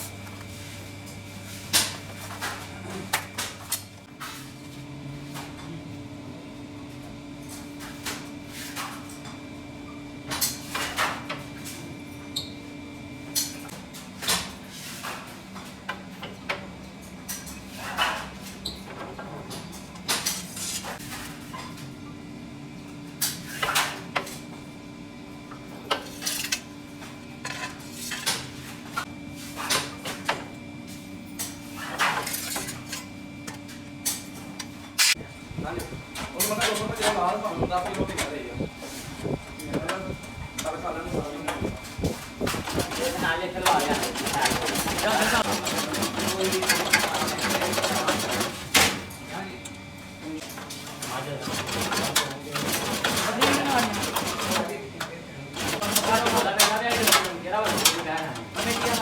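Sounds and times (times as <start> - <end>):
steady machine hum: 21.9 - 59.0.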